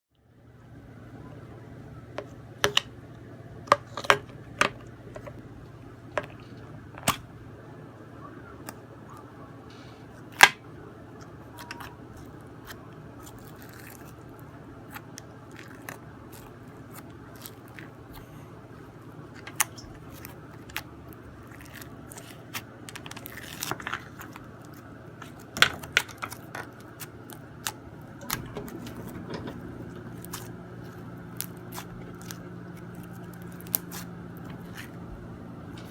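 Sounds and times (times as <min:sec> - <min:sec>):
low hum: 0:00.1 - 0:35.9
slime crackling and popping: 0:30.2 - 0:34.9.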